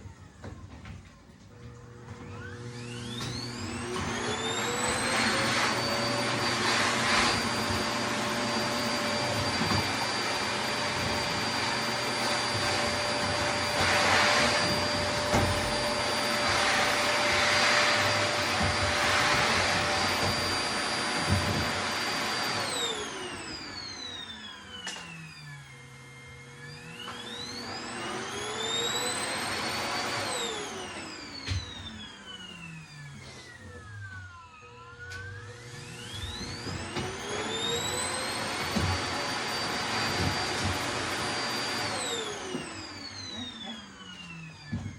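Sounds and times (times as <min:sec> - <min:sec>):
vacuum cleaner motor whining: 0:00.0 - 0:44.9.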